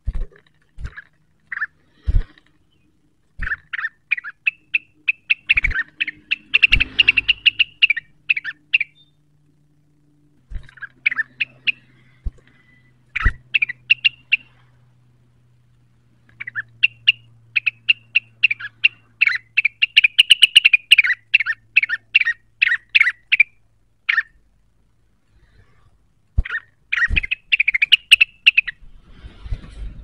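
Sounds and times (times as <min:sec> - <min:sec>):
faint low hum: 0:00.0 - 0:30.0
bird chattering chirps: 0:01.0 - 0:01.8, 0:02.7 - 0:09.2, 0:10.6 - 0:14.7, 0:16.3 - 0:24.4, 0:26.4 - 0:28.8.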